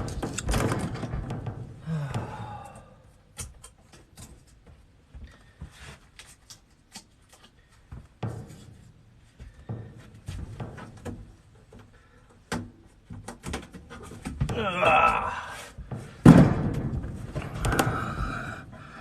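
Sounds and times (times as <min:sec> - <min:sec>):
dull thumps: 0:12.5 - 0:19.0.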